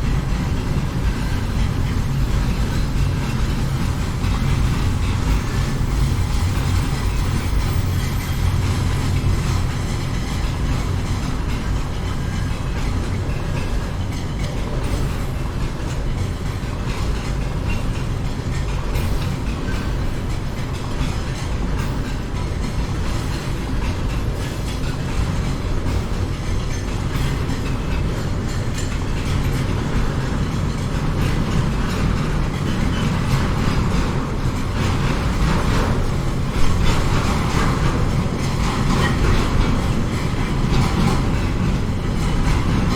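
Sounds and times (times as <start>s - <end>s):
train rumbling on rails: 0.0s - 42.9s
wheel clatter: 0.0s - 42.9s.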